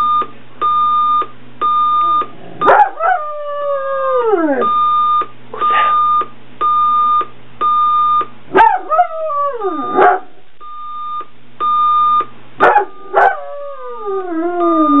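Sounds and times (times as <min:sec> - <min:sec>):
dog barking: 0:02.6 - 0:03.2, 0:08.5 - 0:09.1, 0:09.9 - 0:10.4, 0:12.6 - 0:13.4
dog howling: 0:02.6 - 0:04.7, 0:08.7 - 0:10.2, 0:13.2 - 0:15.0
alarm clock beeping: 0:04.6 - 0:08.3.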